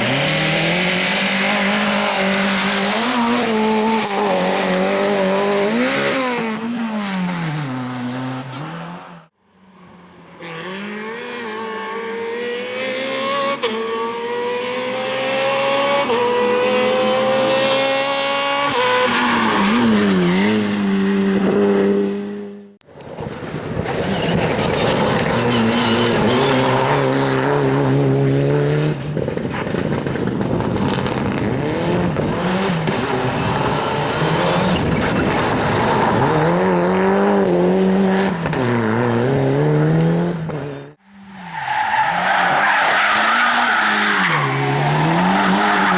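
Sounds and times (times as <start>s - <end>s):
race car engines accelerating: 10.3s - 45.9s.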